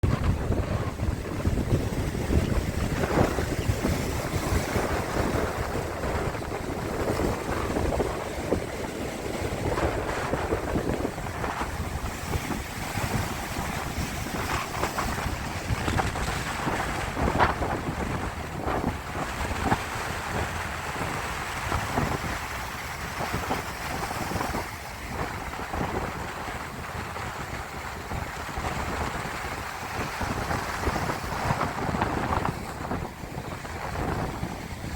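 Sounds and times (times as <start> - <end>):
sea waves splashing: 0.0 - 34.9
wind on microphone: 0.0 - 34.9.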